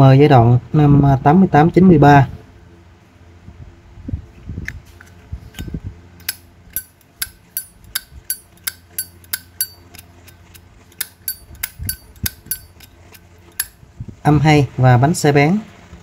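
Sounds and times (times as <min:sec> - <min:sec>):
lighter lid clacking: 0:05.6 - 0:13.8.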